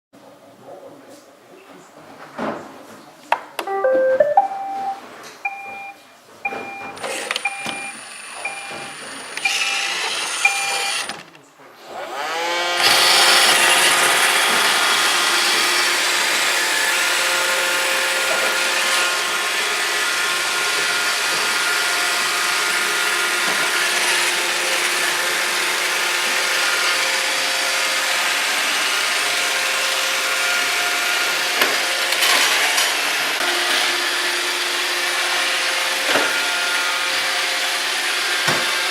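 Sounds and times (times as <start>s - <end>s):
short electronic beeps: 3.7s - 10.9s
robot vacuum motors whirring: 7.0s - 11.3s, 11.9s - 38.9s.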